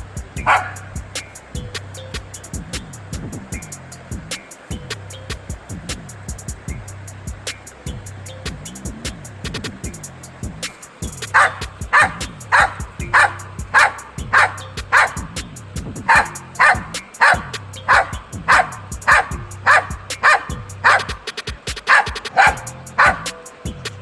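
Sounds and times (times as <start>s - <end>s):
dog barking: 0.4s - 1.0s, 11.3s - 15.4s, 16.0s - 21.3s, 21.9s - 23.4s.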